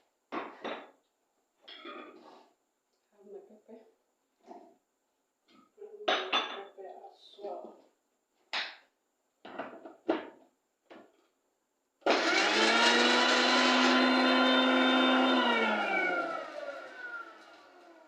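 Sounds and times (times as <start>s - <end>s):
electric grinder motor: 12.1s - 18.0s.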